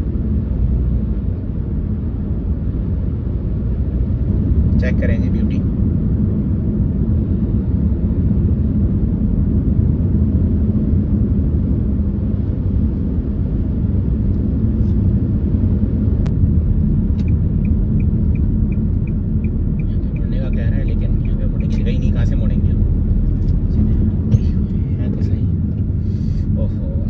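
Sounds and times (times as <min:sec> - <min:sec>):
car road and engine rumble: 0:00.0 - 0:27.0
turn indicator ticking: 0:16.3 - 0:24.8.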